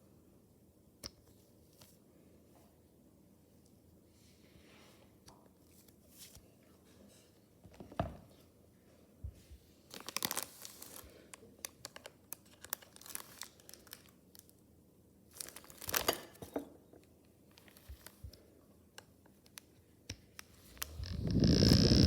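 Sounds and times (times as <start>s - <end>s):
packaging tearing and rustling: 9.9s - 11.1s, 11.8s - 14.1s, 15.4s - 16.1s
small clicks and crinkles: 9.9s - 14.5s, 17.5s - 22.0s.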